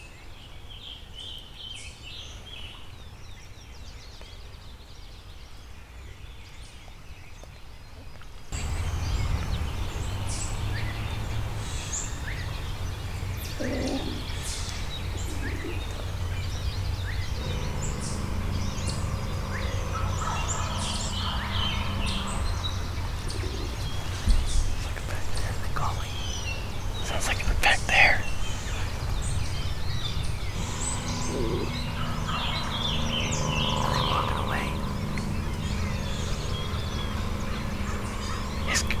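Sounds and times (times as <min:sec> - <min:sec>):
songbirds chirping: 0:00.0 - 0:39.0
wild turkey gobbling: 0:17.4 - 0:24.2, 0:30.6 - 0:39.0.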